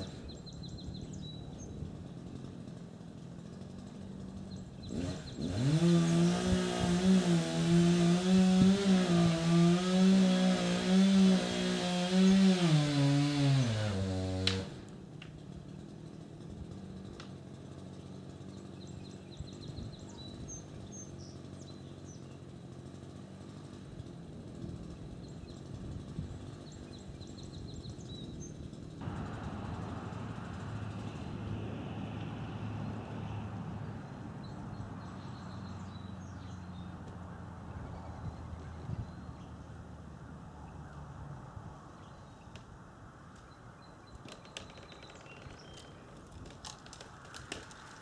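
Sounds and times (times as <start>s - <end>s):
birds chirping: 0.0s - 2.3s, 4.3s - 7.2s, 25.1s - 31.6s, 32.4s - 41.0s, 43.4s - 48.0s
low engine hum: 13.4s - 42.4s.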